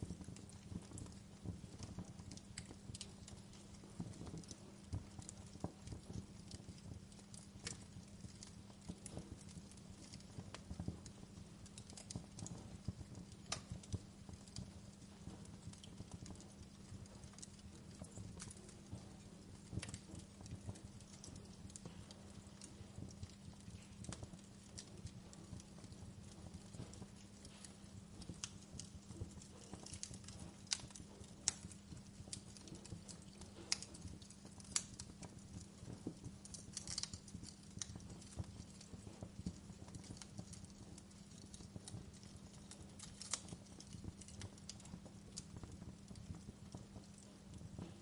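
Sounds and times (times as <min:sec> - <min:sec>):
steady low hum: 0:00.0 - 0:48.0
wood fire crackling: 0:00.0 - 0:48.0.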